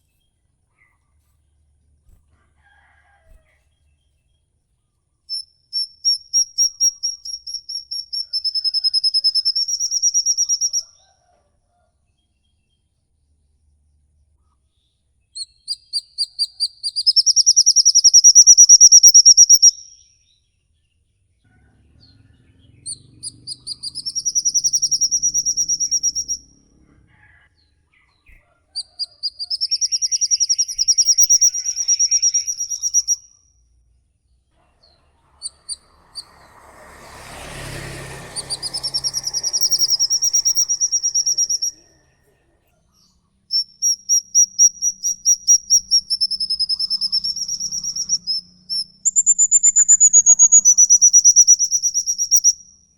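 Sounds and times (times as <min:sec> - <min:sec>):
songbird trilling: 0:05.3 - 0:10.8, 0:15.4 - 0:20.0, 0:22.9 - 0:26.5, 0:28.8 - 0:33.3, 0:38.4 - 0:42.0, 0:43.5 - 0:52.7.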